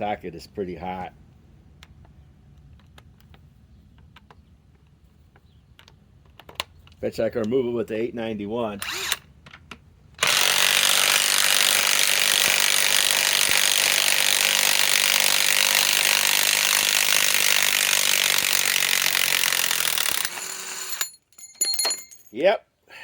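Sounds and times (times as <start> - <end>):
impact wrench hammering: 10.2 - 22.3.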